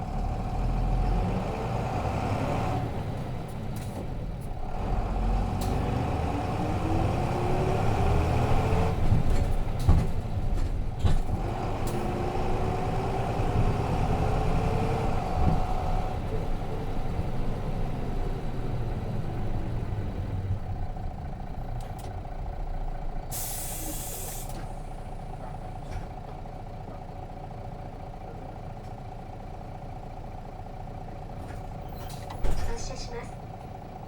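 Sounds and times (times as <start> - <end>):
diesel bus engine running: 0.0 - 34.0
air brakes hissing: 23.3 - 24.9.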